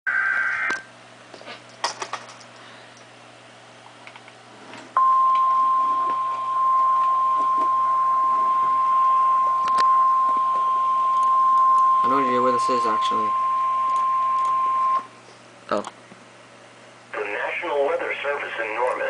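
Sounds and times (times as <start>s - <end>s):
steady alarm tone: 5.0s - 15.1s.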